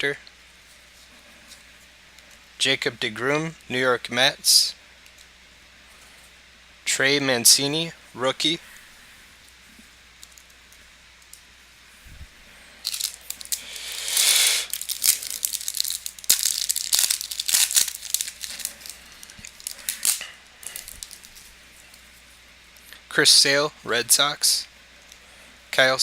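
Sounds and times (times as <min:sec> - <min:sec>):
foil wrapper tearing and crinkling: 0:12.9 - 0:21.5.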